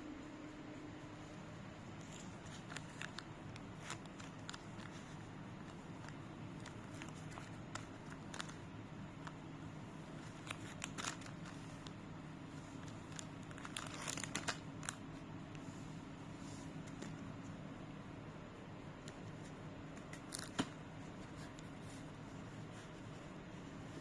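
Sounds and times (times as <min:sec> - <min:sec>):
steady low hum: 0:00.0 - 0:24.0
small objects clicking and crinkling: 0:02.0 - 0:09.4, 0:10.2 - 0:12.0, 0:12.7 - 0:15.0.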